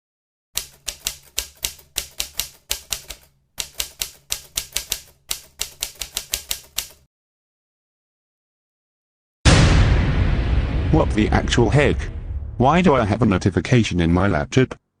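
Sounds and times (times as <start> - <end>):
typing on laptop keyboard: 0.6 - 7.1.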